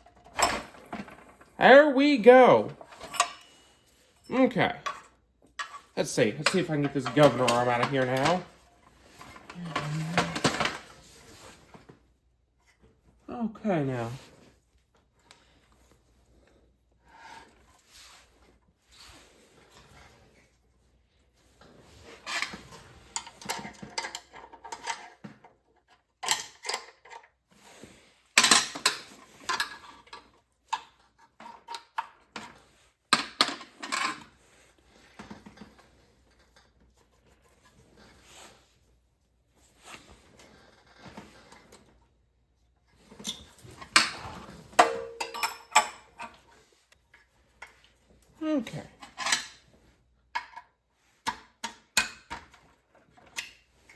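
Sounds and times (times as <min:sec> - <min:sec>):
hand tools clanking on metal: 0:02.8 - 0:03.6, 0:04.3 - 0:08.6, 0:43.2 - 0:46.4.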